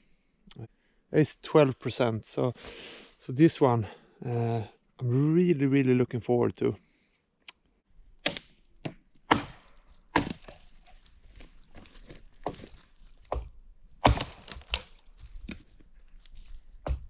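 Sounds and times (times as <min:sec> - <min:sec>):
wood cracking and snapping: 0:08.2 - 0:17.0.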